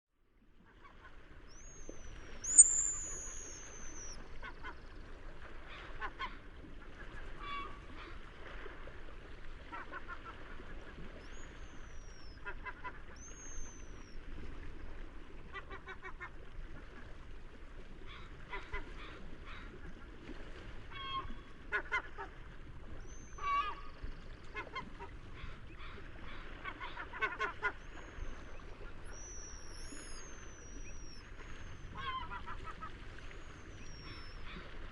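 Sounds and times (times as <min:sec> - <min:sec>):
sea noise: 0:00.7 - 0:34.9
seagulls calling: 0:02.4 - 0:04.2, 0:23.2 - 0:34.8.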